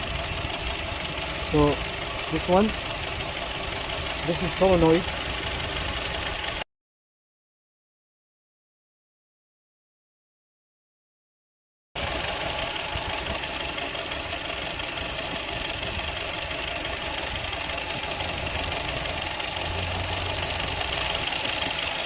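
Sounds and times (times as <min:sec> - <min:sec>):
car engine idling roughly: 0:00.0 - 0:06.6, 0:12.0 - 0:22.0.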